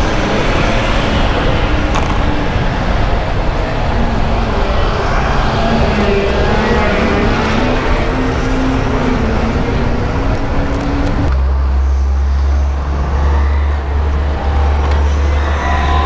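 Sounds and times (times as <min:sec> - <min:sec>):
deep traffic rumble: 0:00.0 - 0:16.0
vehicle engine running: 0:09.8 - 0:15.1.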